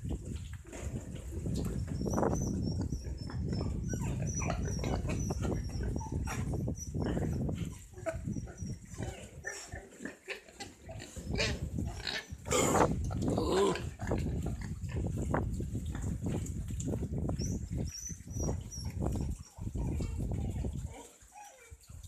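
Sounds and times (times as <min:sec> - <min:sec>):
pigs grunting: 0:00.7 - 0:15.3.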